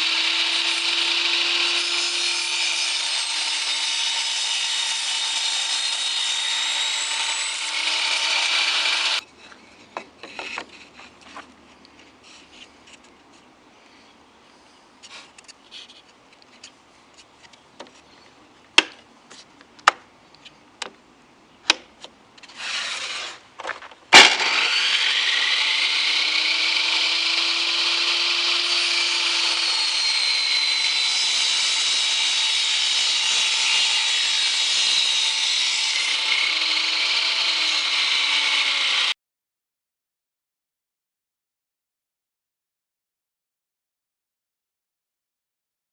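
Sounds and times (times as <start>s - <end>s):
power tool whining on wood: 0.0s - 9.2s, 24.1s - 39.2s.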